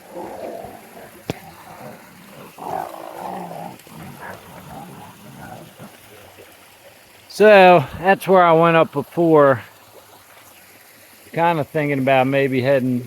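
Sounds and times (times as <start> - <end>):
heavy breathing and grunts: 0.0 - 6.6.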